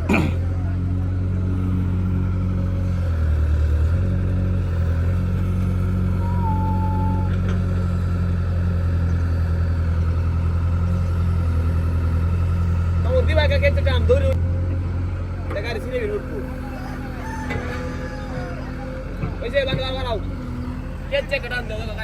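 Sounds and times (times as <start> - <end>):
heavy diesel engine droning: 0.0 - 22.0
thin whistle: 6.2 - 7.3.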